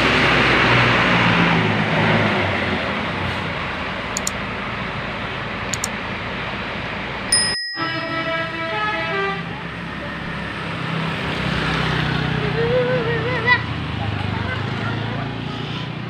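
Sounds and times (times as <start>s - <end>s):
bus driving past: 0.0s - 7.3s, 8.0s - 16.0s
faint clicks: 4.2s - 4.4s, 5.7s - 5.9s.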